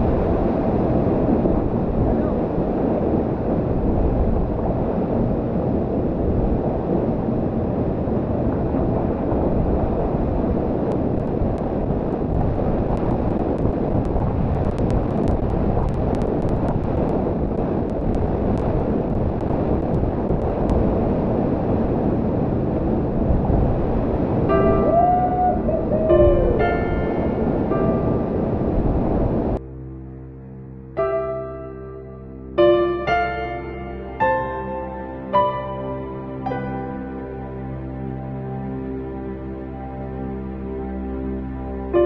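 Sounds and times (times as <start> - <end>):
waterfall and rushing river: 0.0 - 29.6.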